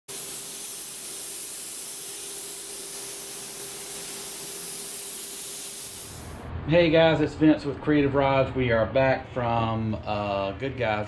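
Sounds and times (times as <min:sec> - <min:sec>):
steady hiss: 0:00.1 - 0:06.4.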